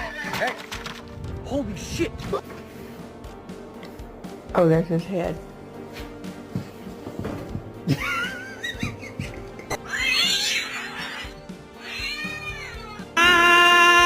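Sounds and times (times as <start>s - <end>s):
music: 0.0s - 14.0s
cat meowing: 9.9s - 14.0s.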